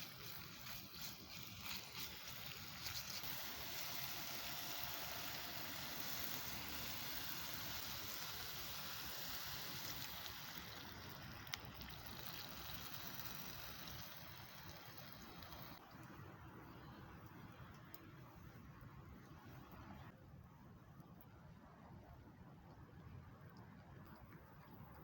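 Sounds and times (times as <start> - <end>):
food sizzling in a pan: 0.0 - 15.8.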